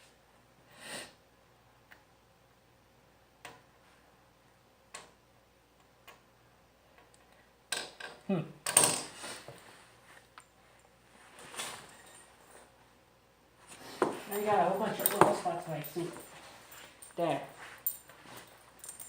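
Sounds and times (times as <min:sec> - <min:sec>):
small metal parts clattering: 0:14.3 - 0:19.0.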